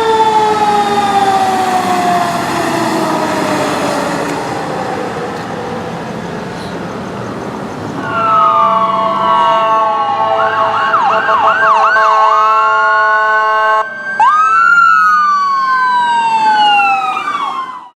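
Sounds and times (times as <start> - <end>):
air horn blast: 8.0 - 13.9
electronic siren yelping and wailing: 8.0 - 17.9.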